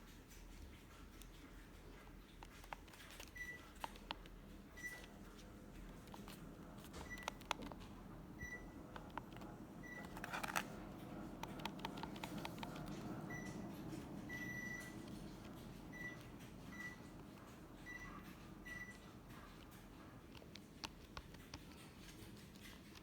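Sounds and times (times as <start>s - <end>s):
steady low hum: 0.0s - 23.0s
ceiling fan beeps: 3.2s - 4.0s, 4.6s - 20.0s.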